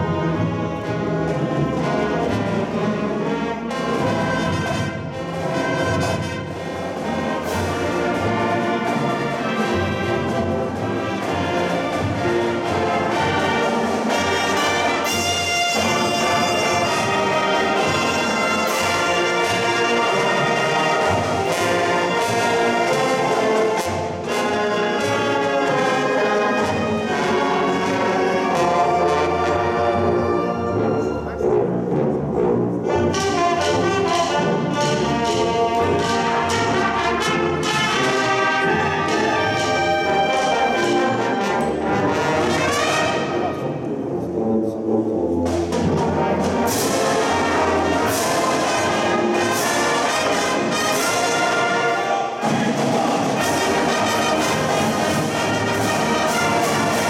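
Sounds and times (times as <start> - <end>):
brass playing chords and melody: 0.0 - 57.0
drumline hits: 3.6 - 30.1, 45.3 - 57.0.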